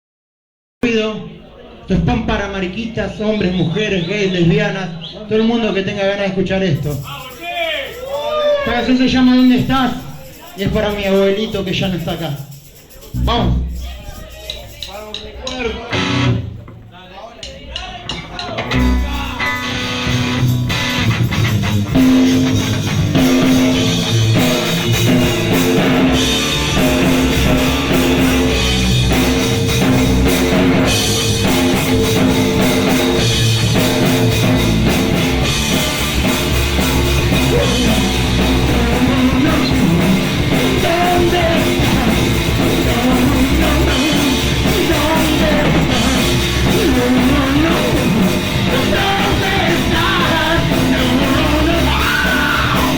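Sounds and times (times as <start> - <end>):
drum kit beat: 6.7 - 52.9
punk rock band playing loud: 14.4 - 52.9
electric guitar: 15.9 - 16.6, 18.5 - 52.9.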